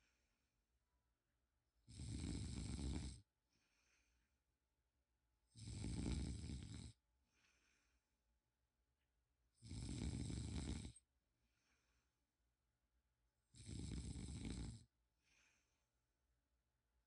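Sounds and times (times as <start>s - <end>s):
faint breath: 0.0s - 0.5s, 3.5s - 4.4s, 7.2s - 8.2s, 11.4s - 12.3s, 15.2s - 16.1s
person snoring: 1.9s - 3.2s, 5.5s - 7.0s, 9.6s - 11.0s, 13.5s - 14.9s.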